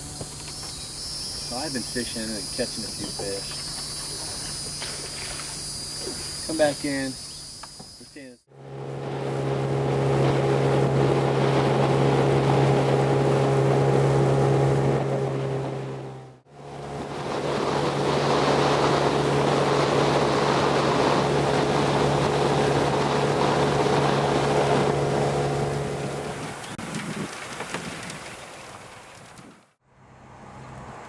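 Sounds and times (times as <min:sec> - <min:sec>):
outboard motor running: 0:08.5 - 0:26.8
wind and water rushing: 0:08.7 - 0:29.6.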